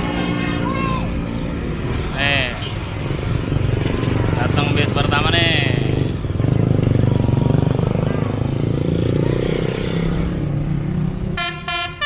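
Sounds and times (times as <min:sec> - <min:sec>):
musical bus horn: 0:00.0 - 0:01.1, 0:11.4 - 0:12.0.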